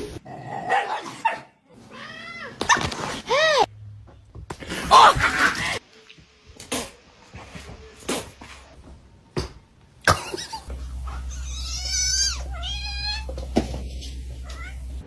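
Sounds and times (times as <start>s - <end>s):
cat meowing: 11.3s - 13.4s, 14.4s - 14.9s.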